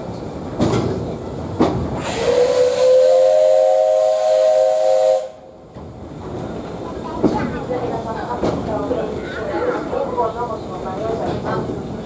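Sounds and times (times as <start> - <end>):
steam hiss: 2.0 - 5.4
steam whistle chord: 2.1 - 5.4.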